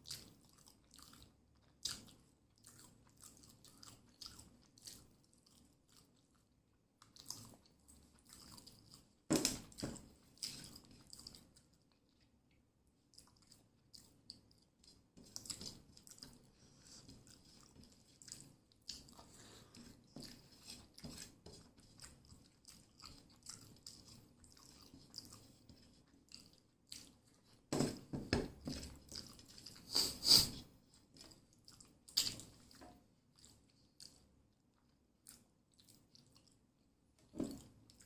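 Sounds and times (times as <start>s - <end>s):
close chewing of food: 0.0s - 38.0s
wet mouth clicks: 31.7s - 32.8s.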